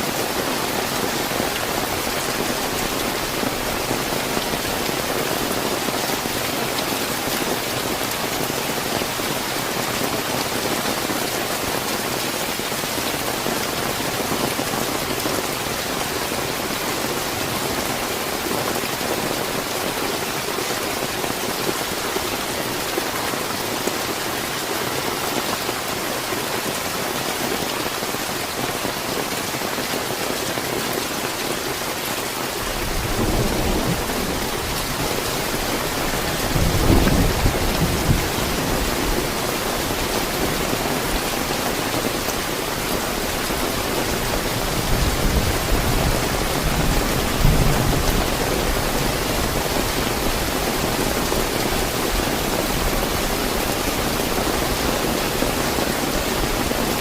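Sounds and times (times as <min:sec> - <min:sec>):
heavy rain: 0:00.0 - 0:57.0
thunder rumble: 0:32.6 - 0:39.0.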